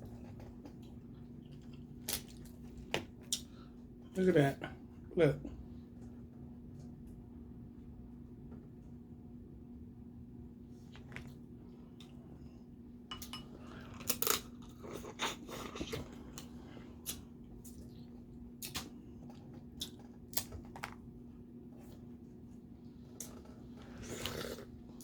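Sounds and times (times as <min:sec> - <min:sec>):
faint steady hum: 0:00.0 - 0:25.0
chewing: 0:13.6 - 0:21.0.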